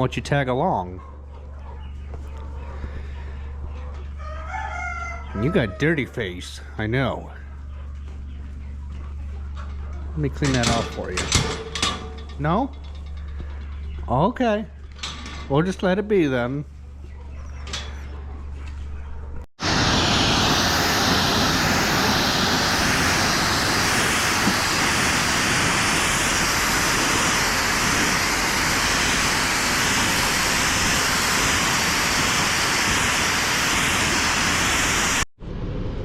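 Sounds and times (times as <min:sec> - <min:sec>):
pressure washer spraying: 0:19.6 - 0:35.2.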